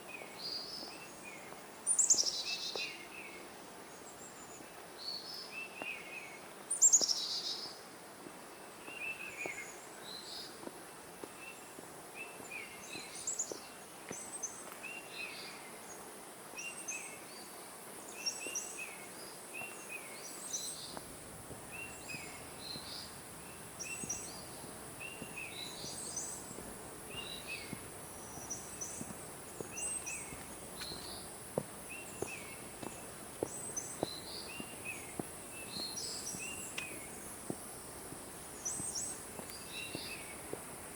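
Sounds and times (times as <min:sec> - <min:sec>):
birds chirping: 0:18.2 - 0:40.9.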